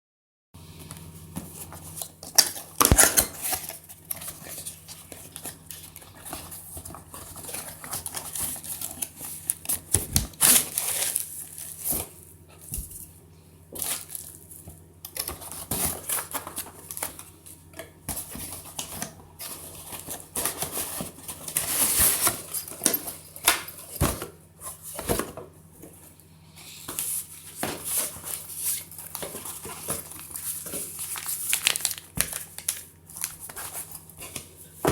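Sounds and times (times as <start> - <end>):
packaging rustling and crinkling: 1.4 - 13.1, 13.7 - 26.1, 26.7 - 34.9
packaging clicks and knocks: 26.9 - 34.9.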